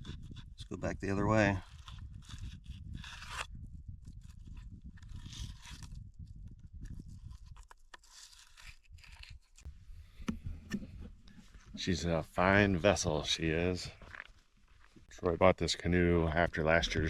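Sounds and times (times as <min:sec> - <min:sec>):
knife scraping fish skin: 0:01.7 - 0:03.5, 0:07.2 - 0:09.7.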